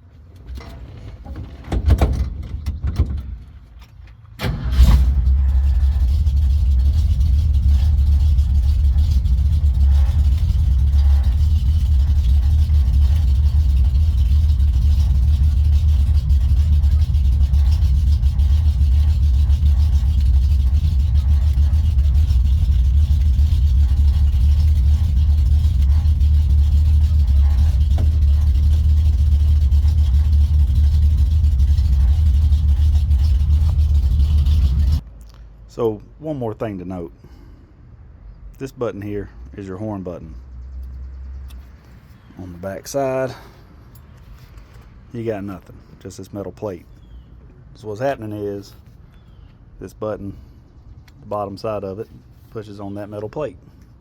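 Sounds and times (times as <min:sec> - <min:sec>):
pickup engine idling: 0:04.4 - 0:35.0.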